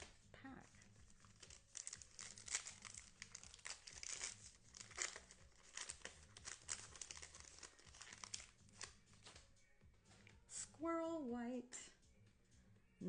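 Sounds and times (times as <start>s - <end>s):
wrapper tearing and crinkling: 0.6s - 9.0s.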